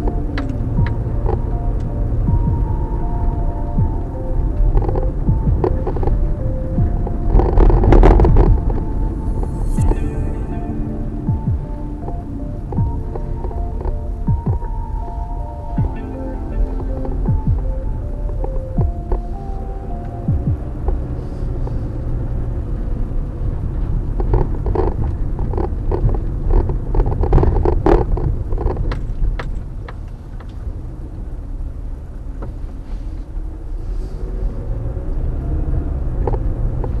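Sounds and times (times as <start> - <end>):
car road rumble: 0.0 - 37.0.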